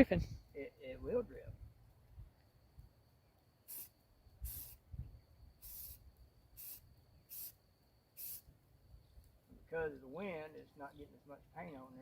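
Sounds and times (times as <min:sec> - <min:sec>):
low wind rumble: 0:00.0 - 0:02.3
spray can hissing: 0:03.7 - 0:04.8, 0:05.6 - 0:06.0, 0:06.6 - 0:07.6, 0:08.2 - 0:08.5.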